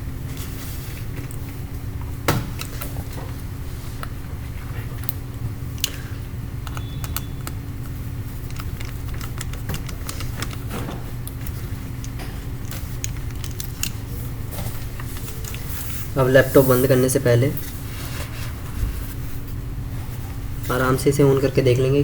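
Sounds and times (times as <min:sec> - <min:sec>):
steady low hum: 0:00.0 - 0:22.0
small parts clicking and tapping: 0:05.0 - 0:15.8.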